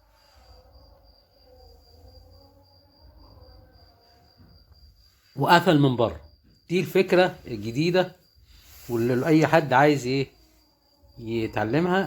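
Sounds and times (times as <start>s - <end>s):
faint high-pitched tone: 0.0s - 12.0s
faint wavering murmur: 0.0s - 12.0s.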